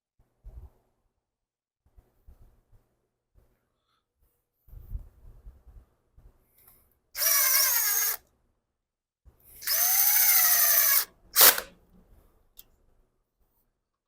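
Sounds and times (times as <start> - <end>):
cordless drill motor whining: 7.2 - 8.2, 9.6 - 11.7.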